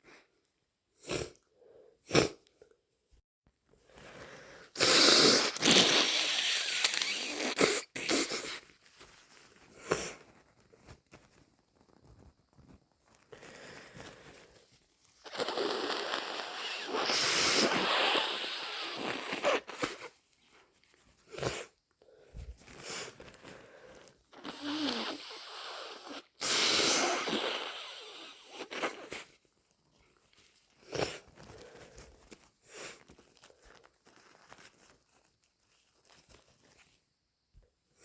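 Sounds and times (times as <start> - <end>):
nose blowing into a tissue: 1.0 - 2.4, 4.0 - 8.8, 15.2 - 20.2, 21.2 - 21.8, 22.4 - 29.4, 30.8 - 33.1
person sneezing: 4.8 - 8.6.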